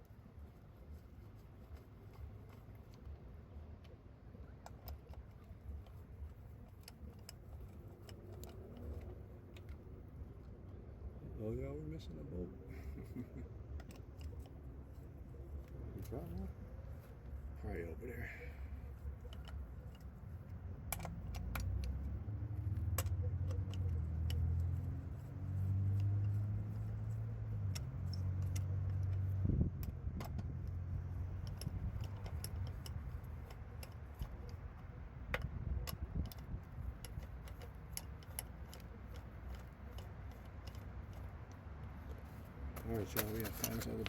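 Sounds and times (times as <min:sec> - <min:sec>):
metal bolts and tools clinking: 0:13.7 - 0:16.1, 0:18.9 - 0:44.0.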